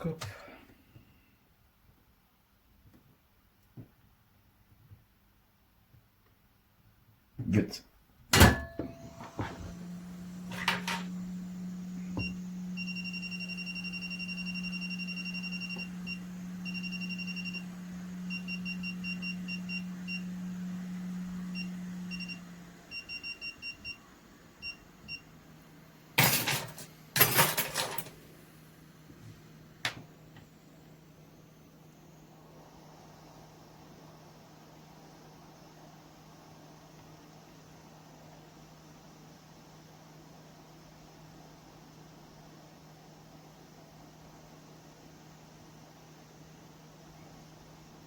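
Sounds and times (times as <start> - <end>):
tools knocking and clattering: 26.2 - 28.2.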